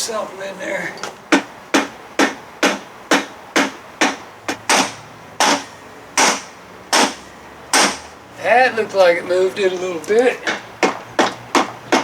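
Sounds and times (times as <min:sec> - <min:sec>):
hammer striking metal wedge: 0:01.3 - 0:08.1, 0:10.4 - 0:12.0.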